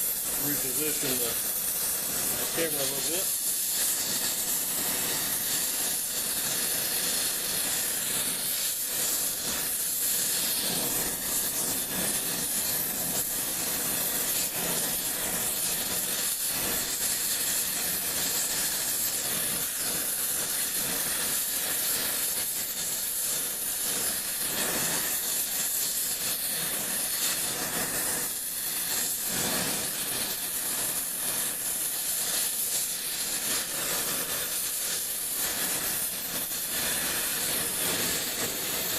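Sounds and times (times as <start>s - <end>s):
gas torch hissing: 0.0s - 38.9s.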